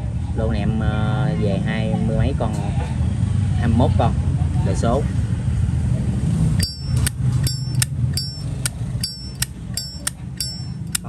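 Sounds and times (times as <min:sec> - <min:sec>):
low hum: 0:06.6 - 0:11.0
lighter lid clicking open and shut: 0:10.8 - 0:11.0.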